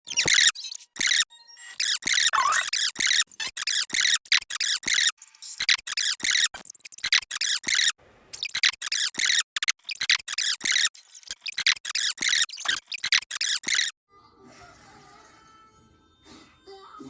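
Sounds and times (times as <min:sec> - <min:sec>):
squeaky sneeze sound effects: 0:02.3 - 0:02.8.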